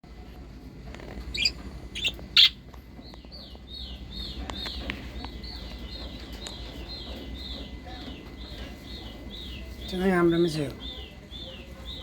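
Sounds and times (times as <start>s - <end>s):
budgerigars chirping: 1.3s - 4.9s.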